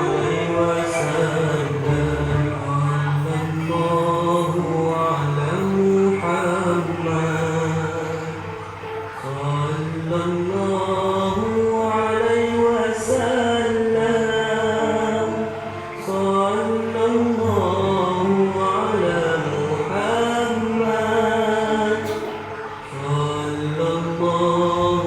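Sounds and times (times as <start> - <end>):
voice chanting a mantra: 0.0 - 25.0.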